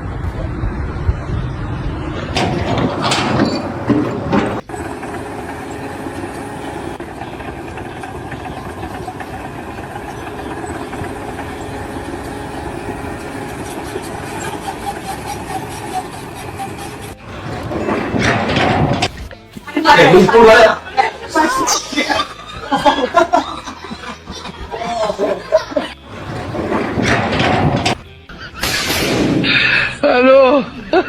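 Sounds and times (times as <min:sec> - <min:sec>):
sharp knocks and clatter: 0:02.2 - 0:04.7, 0:17.2 - 0:19.4, 0:26.1 - 0:28.0
machine engine humming: 0:02.2 - 0:19.3.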